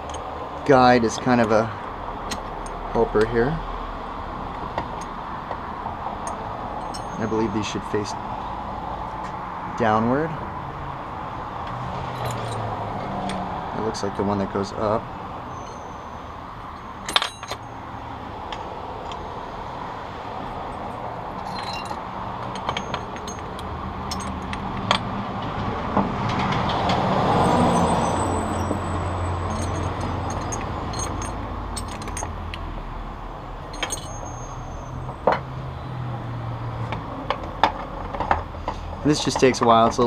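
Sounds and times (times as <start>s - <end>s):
metallic clicks and knocks: 2.2s - 3.3s, 4.5s - 7.5s, 16.6s - 17.7s, 20.8s - 27.0s, 29.4s - 32.7s, 33.7s - 34.6s, 36.8s - 40.0s.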